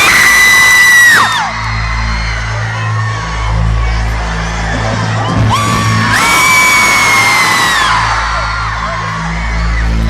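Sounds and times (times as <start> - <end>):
crowd screaming and cheering: 0.0 - 10.0
shrill scream: 5.5 - 8.2.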